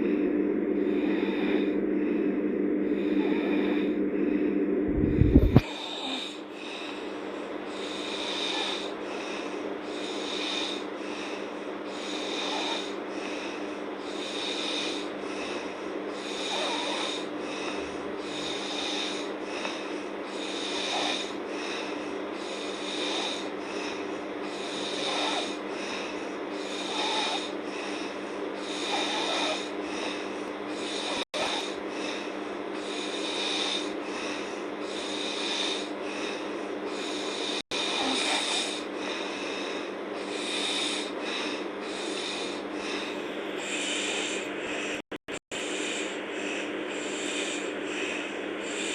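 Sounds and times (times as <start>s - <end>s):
steady low hum: 0.0s - 48.9s
girl snoring: 0.8s - 2.2s, 2.8s - 4.0s, 4.9s - 7.1s, 7.7s - 45.1s.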